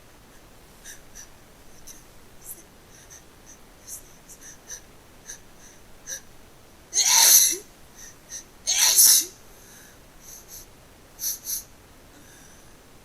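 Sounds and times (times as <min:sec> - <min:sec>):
person sneezing: 0:07.0 - 0:07.6, 0:08.7 - 0:09.3.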